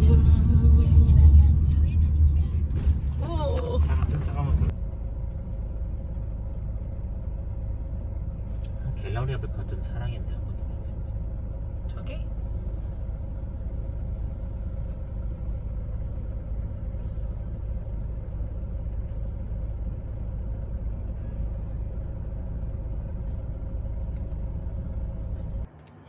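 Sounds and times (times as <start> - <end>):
road rumble inside car: 0.0 - 26.0.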